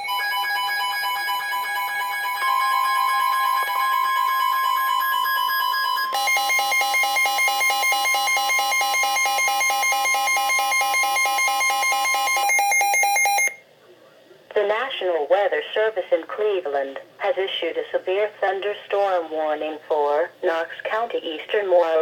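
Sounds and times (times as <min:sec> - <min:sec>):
two-tone electronic alert: 0:00.0 - 0:13.6.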